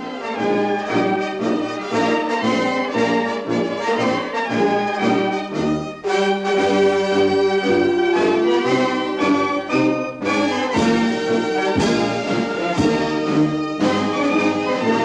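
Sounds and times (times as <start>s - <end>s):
brass-led orchestral music: 0.0s - 15.0s.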